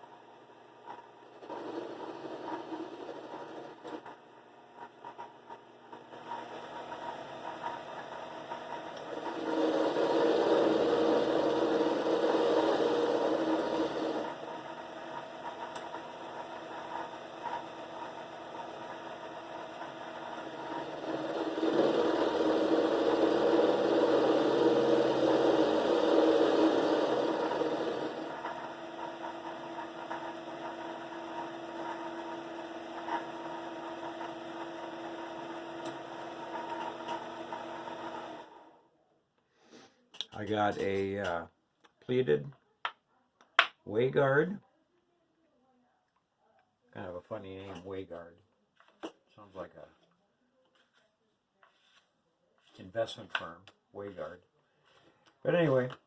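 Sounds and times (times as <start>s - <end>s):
lathe motor humming: 0.0s - 38.8s.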